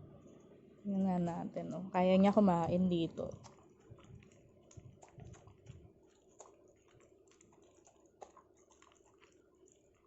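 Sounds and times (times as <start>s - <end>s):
dog eating from a plate: 3.3s - 10.0s.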